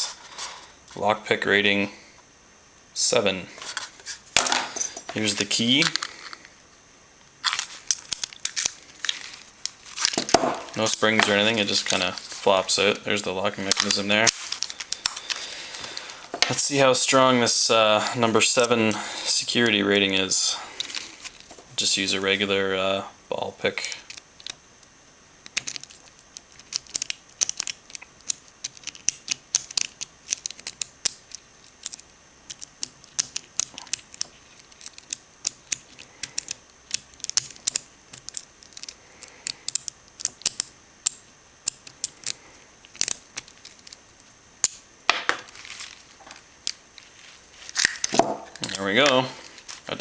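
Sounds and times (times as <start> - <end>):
lock pick clicking in cylinder: 25.4 - 44.0.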